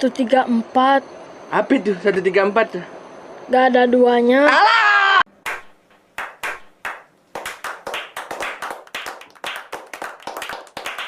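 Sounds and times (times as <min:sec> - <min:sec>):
people clapping: 0:05.4 - 0:11.0.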